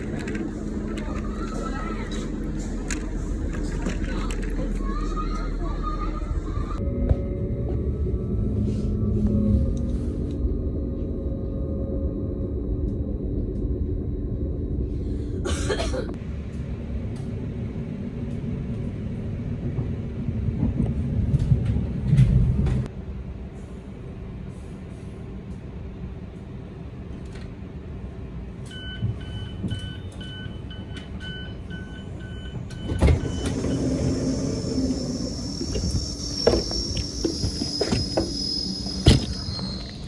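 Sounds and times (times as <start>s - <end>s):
train rumble: 0.0s - 30.4s, 31.0s - 40.0s
electronic beeps: 33.2s - 40.0s.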